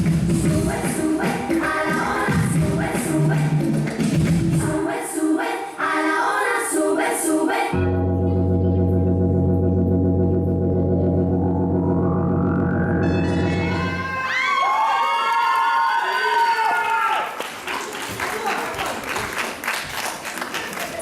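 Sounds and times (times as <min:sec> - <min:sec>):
dance music beat: 0:00.0 - 0:04.9
tone gliding upward: 0:07.7 - 0:14.4
held organ-like chord: 0:07.8 - 0:13.7.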